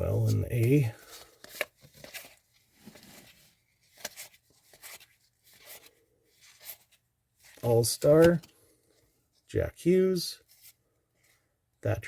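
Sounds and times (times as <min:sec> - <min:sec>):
cards sliding and rustling: 0:00.1 - 0:09.1.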